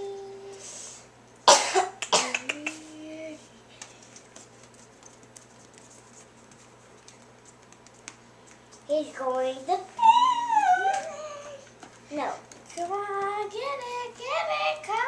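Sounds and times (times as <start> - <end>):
sharp cough: 1.5 - 2.4.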